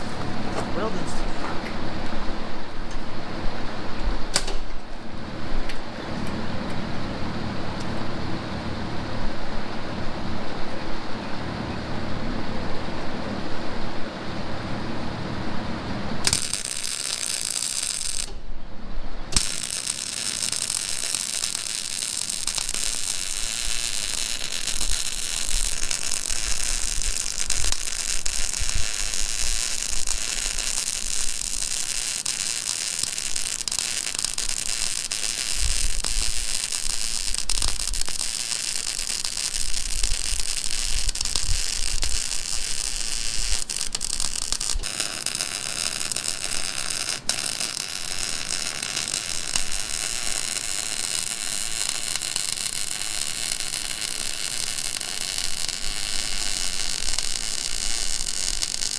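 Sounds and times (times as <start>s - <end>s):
welding arc crackling: 0.0s - 2.0s, 16.1s - 18.4s, 19.3s - 58.9s.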